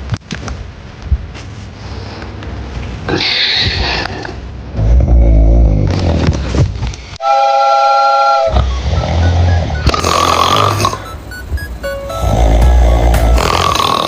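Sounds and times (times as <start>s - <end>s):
whistling snore tones: 8.4s - 11.2s
loud snoring: 8.8s - 11.1s, 12.2s - 14.0s.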